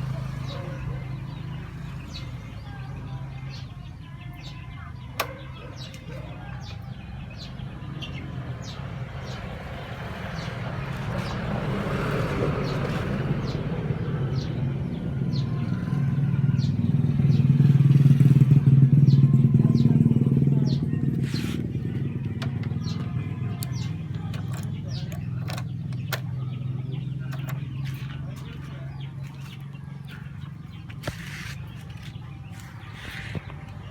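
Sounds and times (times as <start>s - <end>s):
engine running: 8.3s - 33.9s.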